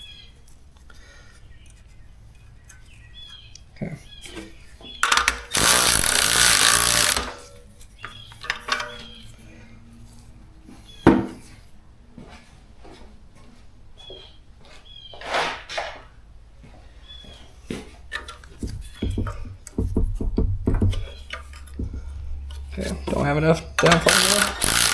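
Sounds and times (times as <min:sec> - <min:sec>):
power tool running: 0:05.0 - 0:07.5, 0:23.6 - 0:24.9.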